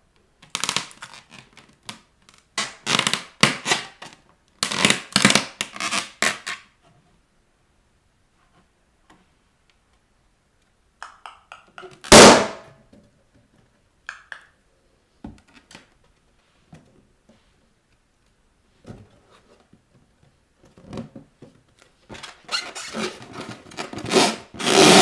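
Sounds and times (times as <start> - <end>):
balloon rubber crinkling: 0.4 - 6.6
balloon popping: 11.8 - 12.7, 24.1 - 25.0.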